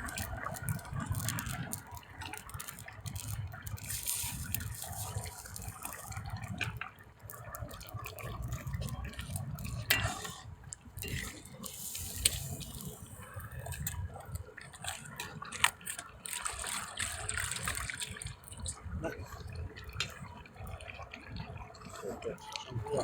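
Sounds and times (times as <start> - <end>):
water dripping and splashing: 0.0 - 23.0.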